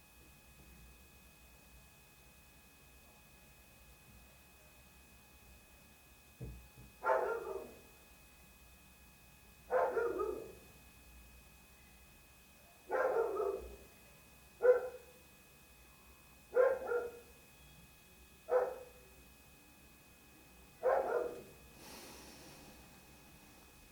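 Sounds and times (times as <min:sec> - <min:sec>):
dog barking: 0:07.0 - 0:07.9, 0:09.7 - 0:10.7, 0:12.9 - 0:13.8, 0:14.6 - 0:15.2, 0:16.5 - 0:17.3, 0:18.5 - 0:19.0, 0:20.8 - 0:21.6.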